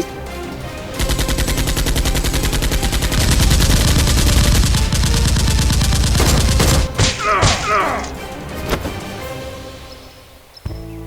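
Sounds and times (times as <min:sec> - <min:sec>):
rapid automatic gunfire: 0:01.0 - 0:07.1.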